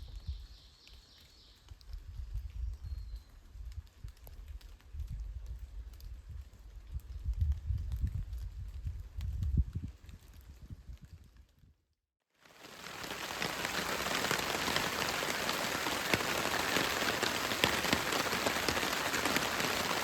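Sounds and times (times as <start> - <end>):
raindrops striking close by: 0.1 - 11.5, 12.4 - 20.0
rain falling: 12.4 - 20.0.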